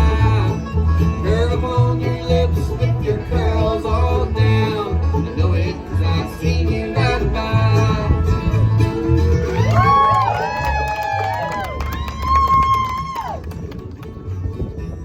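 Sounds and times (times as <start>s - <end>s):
banjo picking: 0.0s - 15.0s
bass line: 0.0s - 15.0s
bluegrass band playing: 0.0s - 15.0s.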